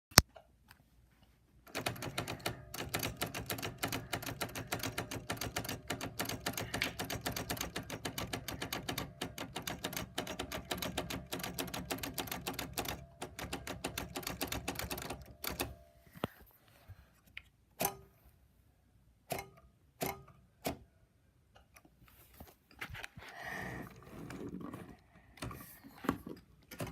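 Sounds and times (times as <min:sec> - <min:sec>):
typewriter keys striking: 0:01.7 - 0:15.7.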